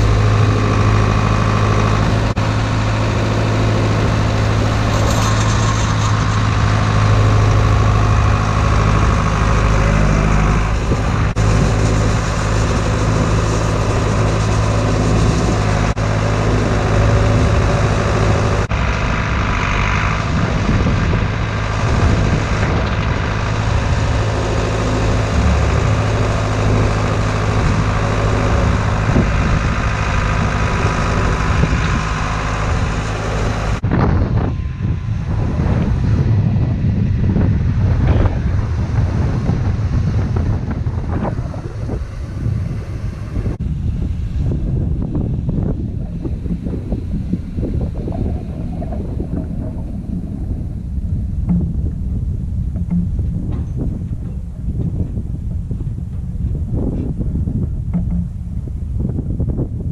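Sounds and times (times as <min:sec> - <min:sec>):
tractor engine humming: 0:00.0 - 0:59.9.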